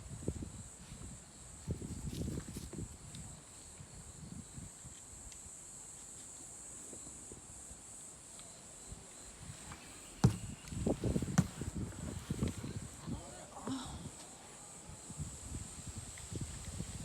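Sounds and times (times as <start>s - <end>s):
high-pitched insect chorus: 0.0s - 17.0s
soft footfalls on trail: 9.4s - 14.6s.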